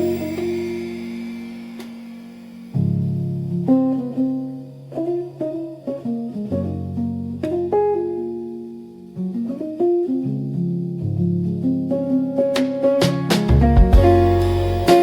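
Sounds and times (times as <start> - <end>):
plucked guitar notes: 0.0 - 15.0
low bass notes: 13.5 - 15.0.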